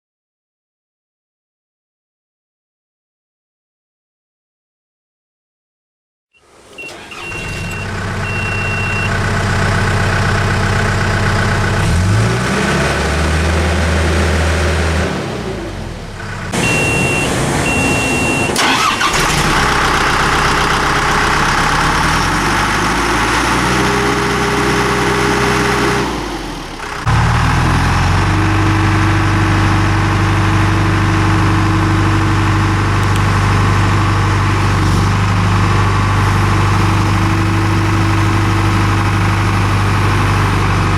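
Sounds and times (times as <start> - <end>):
diesel engine starting and running: 6.4 - 40.9
warning buzzer beeping: 6.8 - 9.1, 16.6 - 18.6.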